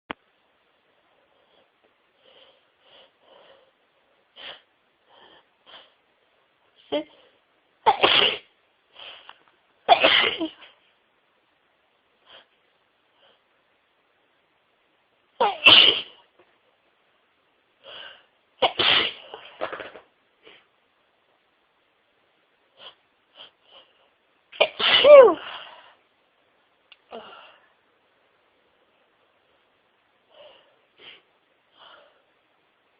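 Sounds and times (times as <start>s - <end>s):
person sneezing: 9.9s - 10.6s, 15.4s - 16.2s, 18.6s - 19.6s, 24.6s - 25.6s.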